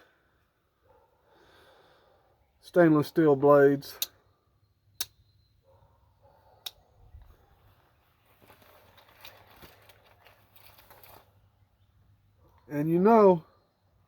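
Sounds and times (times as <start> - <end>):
soft rustling: 7.2 - 11.4.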